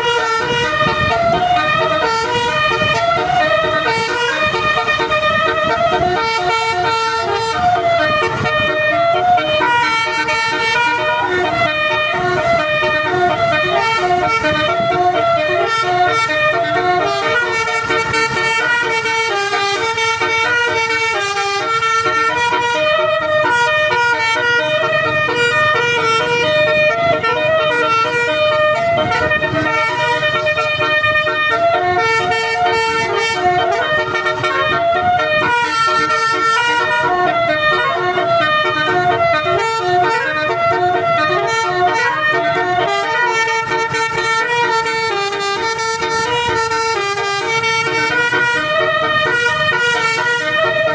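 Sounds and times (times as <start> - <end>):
bus air horns playing melody: 0.0 - 50.9.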